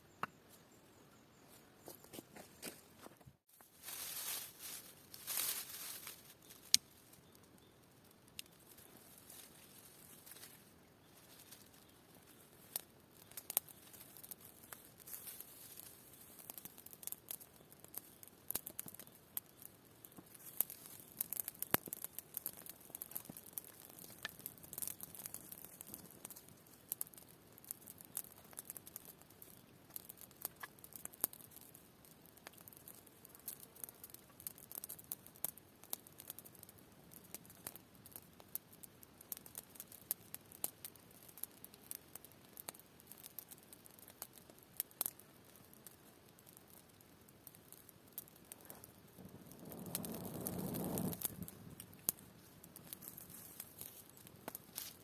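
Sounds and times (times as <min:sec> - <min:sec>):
quiet crackling and rustling: 0:01.4 - 0:55.0
faint hiss: 0:48.4 - 0:55.0.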